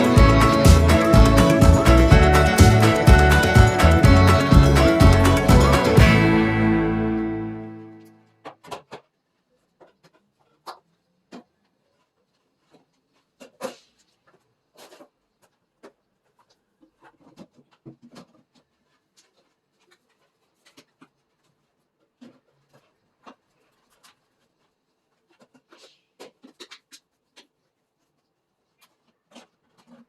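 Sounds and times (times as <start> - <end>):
scrape or rustle: 11.8 - 30.0.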